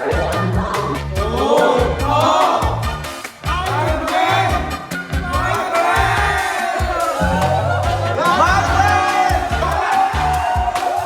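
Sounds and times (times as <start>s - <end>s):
pulsing bass beat: 7.0s - 9.8s
sung or synth melody: 7.2s - 9.0s.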